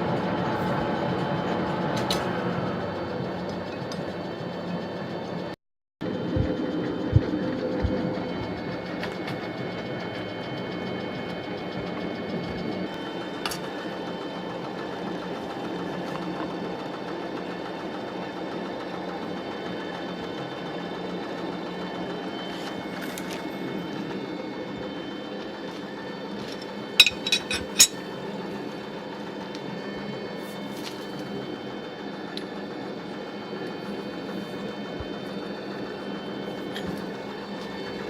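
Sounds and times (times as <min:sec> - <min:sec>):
metal lathe humming: 0:18.6 - 0:38.0.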